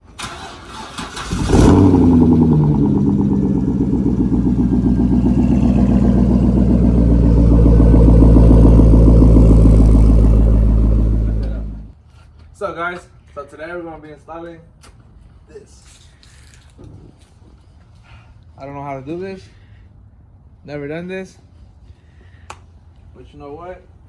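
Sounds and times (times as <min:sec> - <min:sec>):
car engine starting and running: 0:00.1 - 0:11.9.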